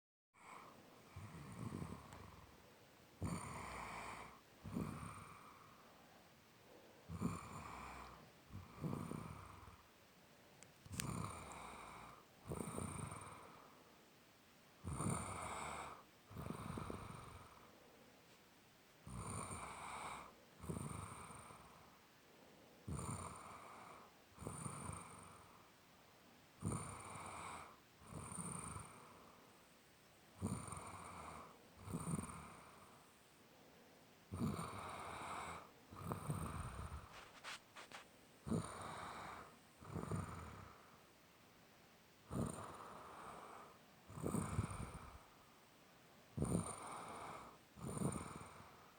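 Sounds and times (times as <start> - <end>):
person snoring: 0.4 - 2.5, 3.2 - 5.8, 7.1 - 9.8, 10.9 - 13.7, 14.8 - 17.7, 19.0 - 21.8, 22.8 - 25.5, 26.6 - 29.3, 30.4 - 32.9, 34.3 - 40.8, 42.3 - 45.2, 46.4 - 48.8.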